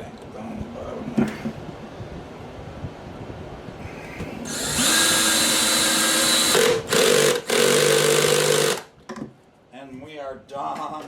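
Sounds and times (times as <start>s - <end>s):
cordless drill driving screw: 4.5s - 8.9s.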